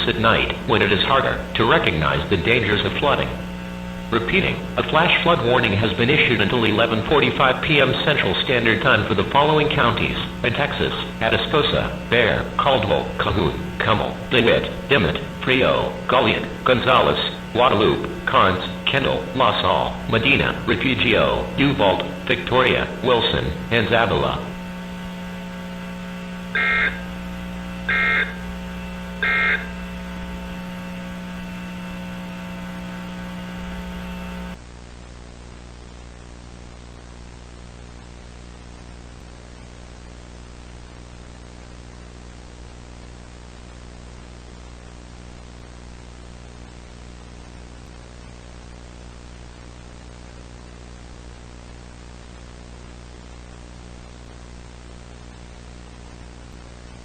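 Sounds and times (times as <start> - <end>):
electrical hum with buzzing: 0.0 - 57.0
low static hiss: 0.0 - 57.0
digital data tone bursts: 26.5 - 27.2, 27.8 - 28.5, 29.2 - 29.8.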